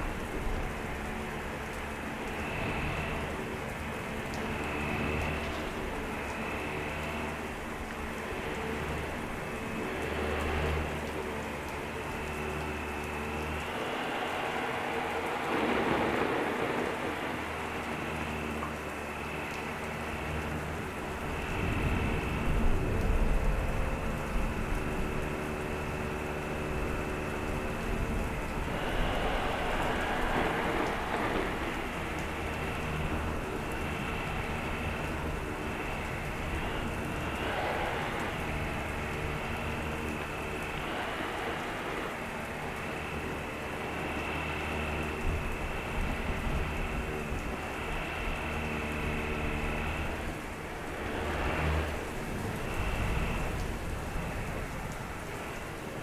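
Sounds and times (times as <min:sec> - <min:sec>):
heavy rain: 0:00.0 - 0:56.0
vacuum cleaner motor hum: 0:04.1 - 0:55.4
thunder: 0:15.2 - 0:18.6, 0:28.3 - 0:35.7.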